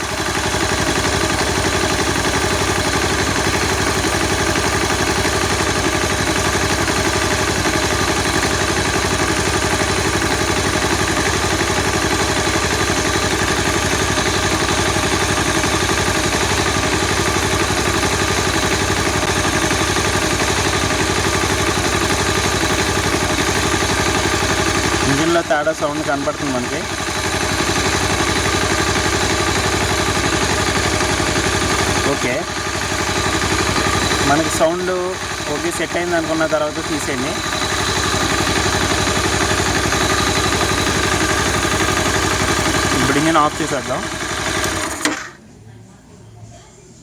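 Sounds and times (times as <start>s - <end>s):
motorcycle engine idling: 0.0s - 45.4s.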